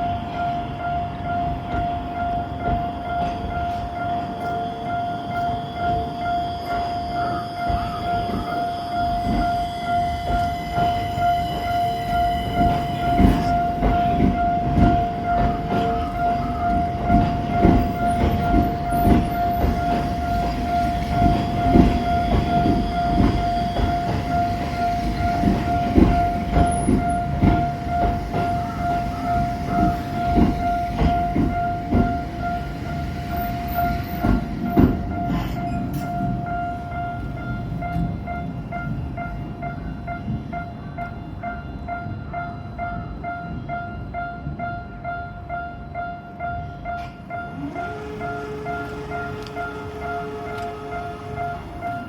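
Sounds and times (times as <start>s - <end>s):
level crossing warning bell: 0.0s - 52.0s
train wheels knocking over rail joints: 7.7s - 38.8s.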